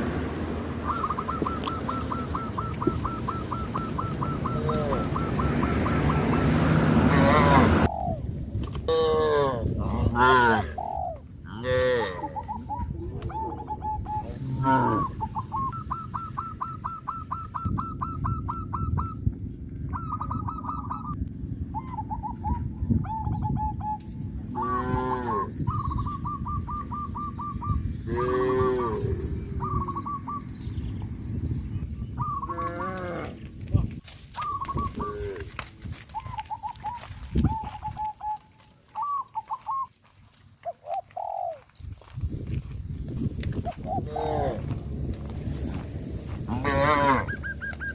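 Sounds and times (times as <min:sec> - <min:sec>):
cows mooing: 0:04.3 - 0:07.9, 0:08.9 - 0:10.8, 0:11.5 - 0:12.4, 0:14.3 - 0:15.2, 0:24.6 - 0:25.5, 0:28.1 - 0:29.4, 0:32.4 - 0:33.5, 0:44.0 - 0:45.6, 0:46.4 - 0:47.6
low rumble: 0:42.0 - 0:47.9.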